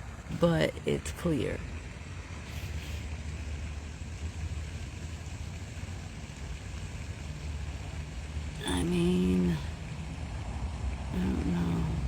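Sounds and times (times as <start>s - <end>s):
low outdoor rumble: 0.0s - 12.0s
even hiss: 2.4s - 3.7s.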